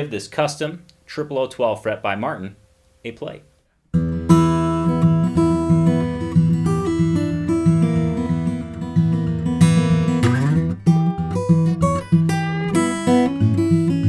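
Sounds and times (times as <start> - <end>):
acoustic guitar playing: 3.9 - 14.0
guitar slide: 4.0 - 14.0.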